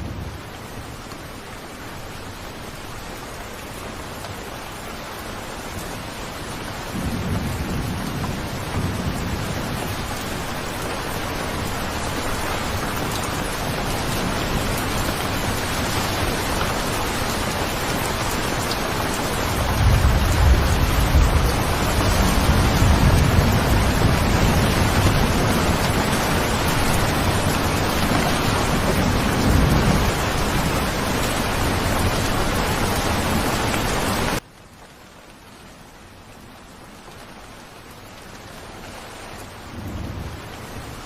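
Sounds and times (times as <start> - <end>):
steady rain: 0.0 - 41.0
deep thunder rumble: 6.9 - 10.8, 19.5 - 32.4.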